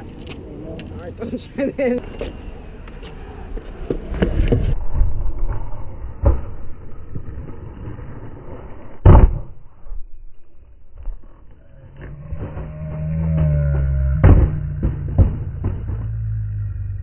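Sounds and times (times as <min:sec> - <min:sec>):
skateboard rolling: 0:02.0 - 0:09.6, 0:10.9 - 0:17.0
loud skateboard slam: 0:09.0 - 0:09.6, 0:14.1 - 0:16.3
knocks: 0:14.1 - 0:16.3.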